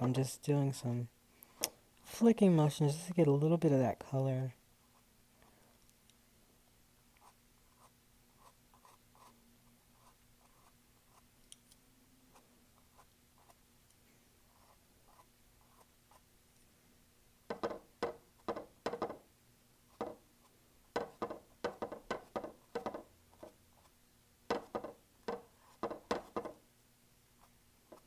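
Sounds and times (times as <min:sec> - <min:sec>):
paintbrush scratching canvas: 0:07.2 - 0:11.3, 0:12.3 - 0:13.6, 0:14.5 - 0:16.3, 0:27.4 - 0:28.0
paintbrush tapping on canvas: 0:17.5 - 0:19.2, 0:20.0 - 0:20.2, 0:20.9 - 0:23.6, 0:24.5 - 0:26.6.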